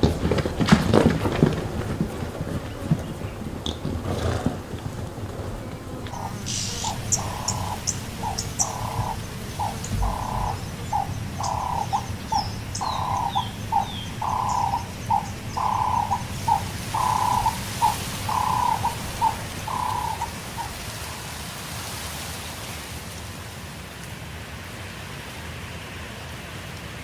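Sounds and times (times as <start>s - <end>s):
low wind rumble: 0.0s - 21.7s
small birds chirping: 5.6s - 21.1s
bird two-note call: 6.2s - 20.3s
falling whistles: 6.2s - 20.8s.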